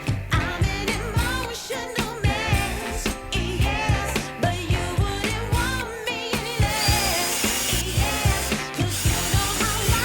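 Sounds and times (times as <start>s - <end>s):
steady drum beat: 0.0s - 10.0s
woman singing pop song: 0.0s - 10.0s.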